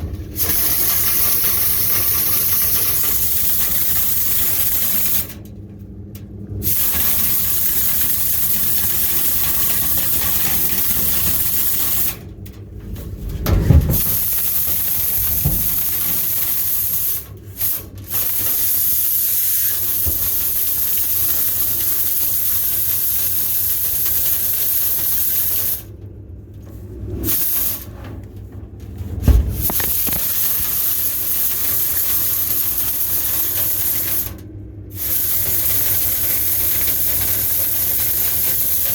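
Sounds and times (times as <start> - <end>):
dull thumps: 13.4 - 14.2, 29.2 - 30.2.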